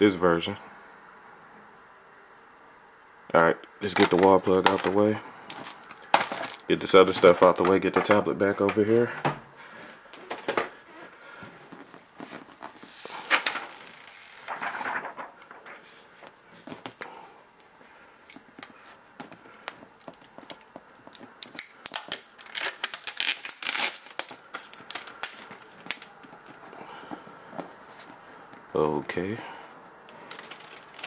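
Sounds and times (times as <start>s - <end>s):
plastic rustling and crinkling: 3.8s - 9.2s, 10.2s - 17.2s, 17.8s - 28.7s, 30.1s - 31.0s.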